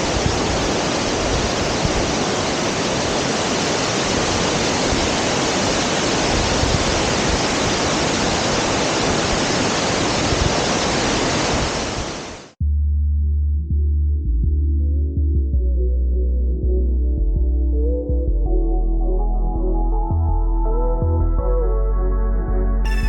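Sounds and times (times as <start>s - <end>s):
waterfall rushing: 0.0s - 12.6s.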